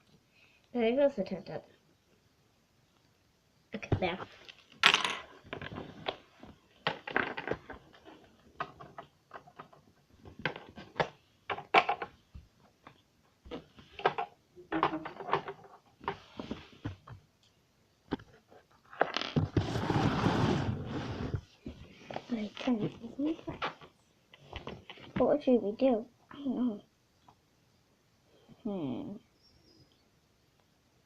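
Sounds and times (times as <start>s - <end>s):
rustling and scraping of toys: 3.8s - 17.2s, 18.1s - 25.5s.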